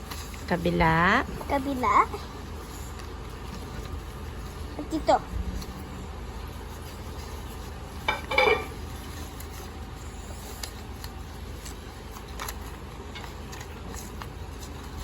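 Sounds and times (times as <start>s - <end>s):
paper crackling and crinkling: 0.0s - 15.0s.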